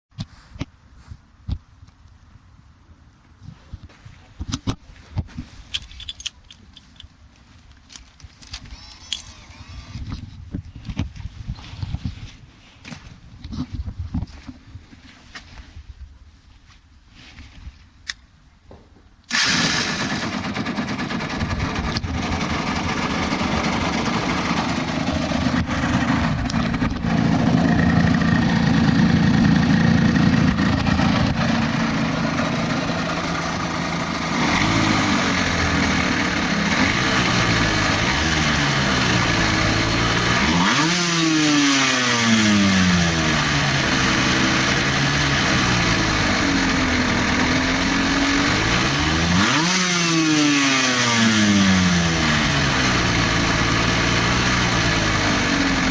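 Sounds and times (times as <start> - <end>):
motorcycle engine revving: 19.3 - 55.9.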